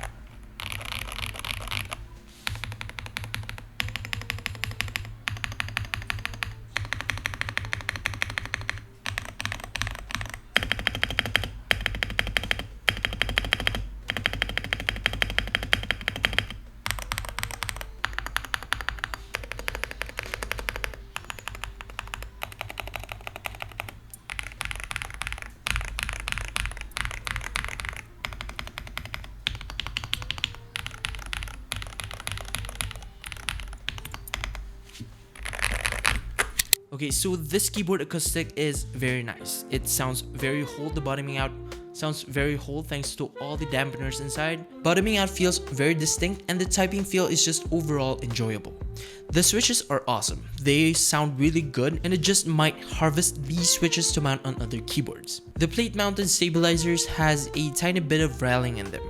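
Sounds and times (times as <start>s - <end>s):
mechanical keyboard typing: 0.0s - 36.8s
background music: 0.0s - 59.0s.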